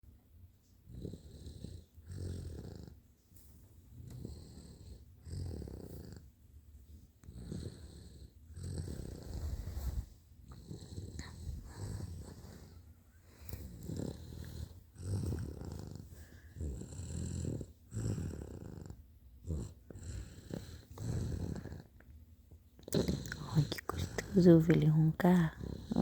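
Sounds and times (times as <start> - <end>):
person snoring: 7.2 - 12.7, 13.4 - 21.9, 22.8 - 24.4, 25.3 - 26.0.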